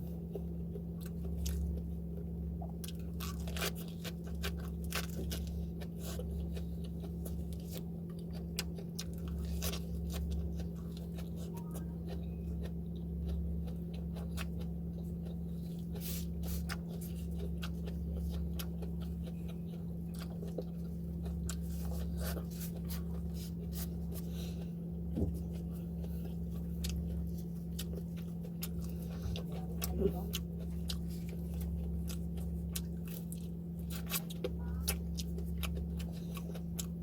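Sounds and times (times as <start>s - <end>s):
crunching and chewing food: 0.0s - 37.0s
steady low hum: 0.0s - 37.0s.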